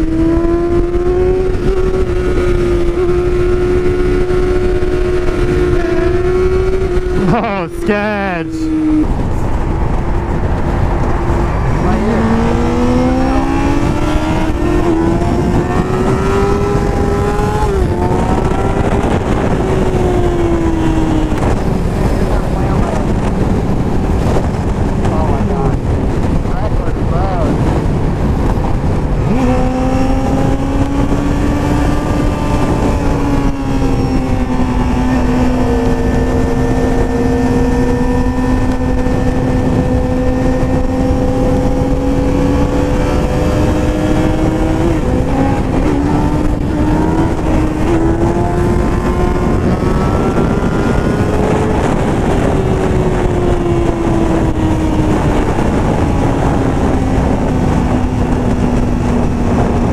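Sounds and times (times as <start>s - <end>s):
motorcycle engine cruising: 0.0s - 59.9s
wind rushing over microphone: 0.0s - 59.9s.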